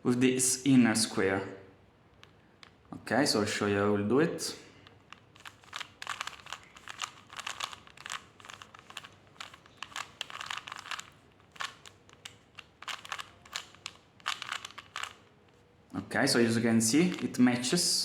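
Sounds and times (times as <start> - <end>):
puzzle cube plastic clicks: 2.1 - 2.9, 4.8 - 15.6.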